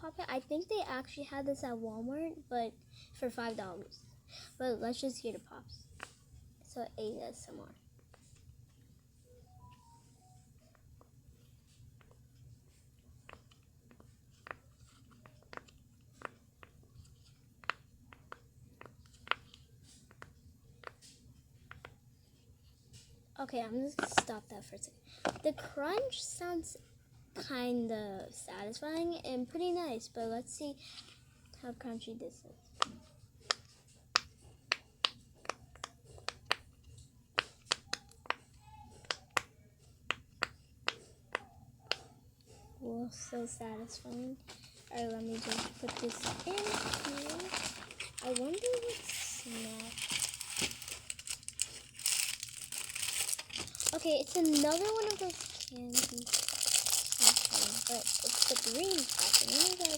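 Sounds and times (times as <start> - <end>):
fidget toy popping and clicking: 32.8 - 39.5.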